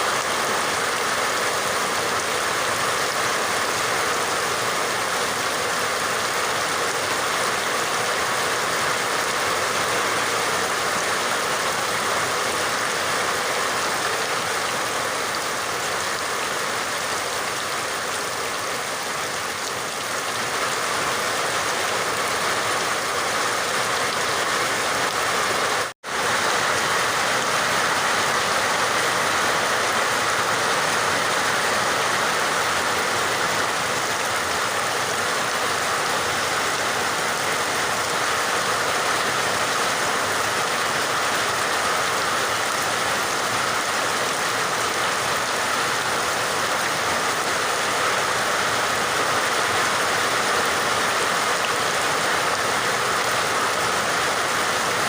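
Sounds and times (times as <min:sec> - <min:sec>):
steady rain: 0:00.0 - 0:55.0.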